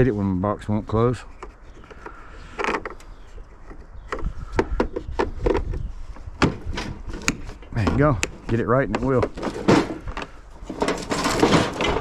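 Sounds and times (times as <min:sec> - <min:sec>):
tool box scraping rattle: 0:06.5 - 0:12.0.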